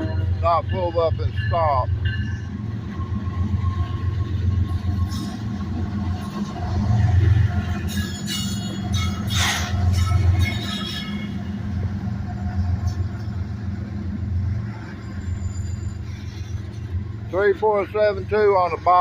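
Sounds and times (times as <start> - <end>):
metallic wheel and brake squeals: 0.0 - 5.5, 7.6 - 11.6, 14.4 - 18.0
diesel locomotive rumble: 0.0 - 19.0.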